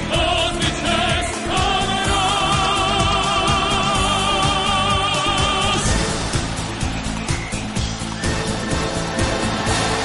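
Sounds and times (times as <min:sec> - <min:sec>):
person singing with vibrato: 0:00.0 - 0:06.2
pop instrumental with drumbeat: 0:00.0 - 0:10.0.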